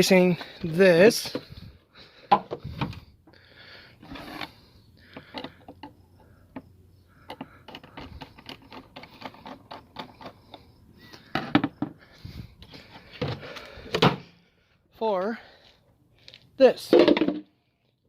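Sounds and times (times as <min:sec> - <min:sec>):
hard parts clicking and tapping: 0:05.1 - 0:12.0.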